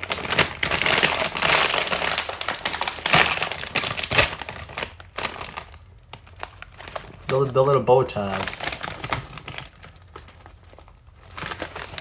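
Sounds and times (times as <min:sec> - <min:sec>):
snack bag crinkling: 0:00.0 - 0:12.0.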